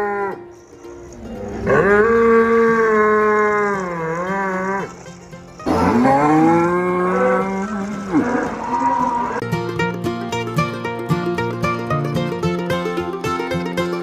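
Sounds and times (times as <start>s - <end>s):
cow mooing: 0.0s - 9.4s
plucked-string music: 0.0s - 14.0s.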